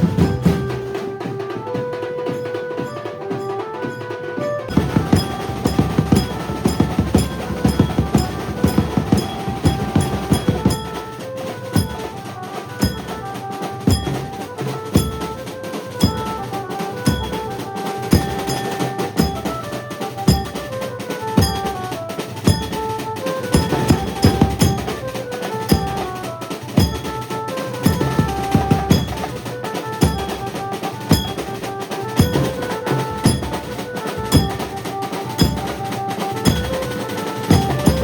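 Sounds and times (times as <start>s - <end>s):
amplified banjo melody: 0.0s - 1.4s
drums and cymbals beating: 0.0s - 38.0s.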